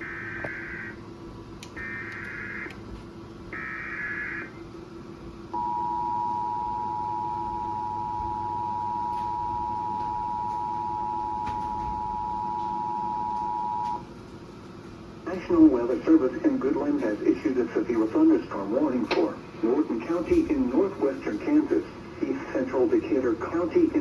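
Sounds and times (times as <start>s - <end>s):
warbling data tone bursts: 0.0s - 1.0s, 1.8s - 2.7s
two-tone attention signal: 5.6s - 14.0s.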